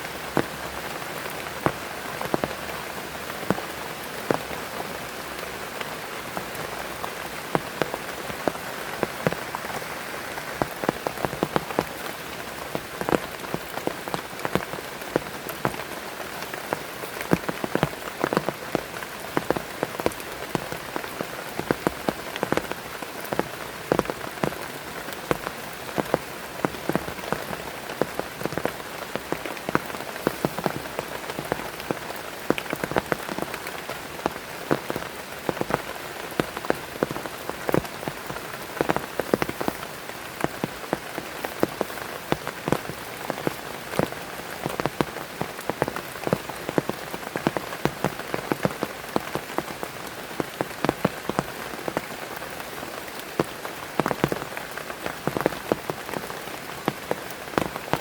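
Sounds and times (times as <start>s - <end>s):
heavy rain hiss: 0.0s - 58.0s
large raindrops splatting: 0.0s - 58.0s.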